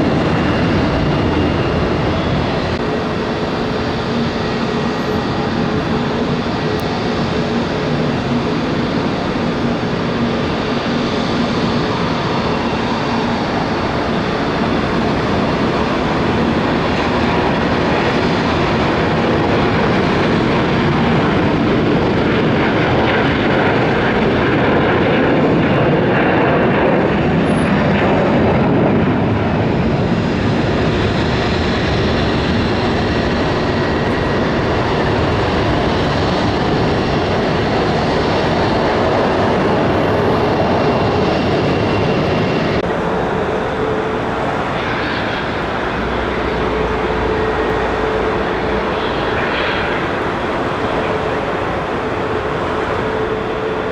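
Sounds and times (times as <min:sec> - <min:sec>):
jet taking off: 0:00.0 - 0:53.9.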